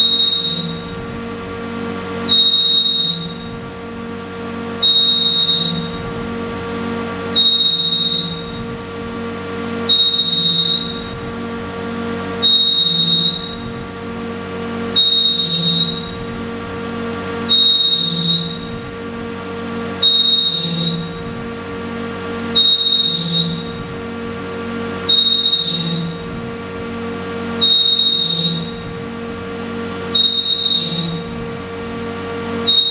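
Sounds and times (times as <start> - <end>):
low pulsing tone: 0.0 - 32.9
high electronic beep: 30.2 - 31.2, 32.7 - 32.9.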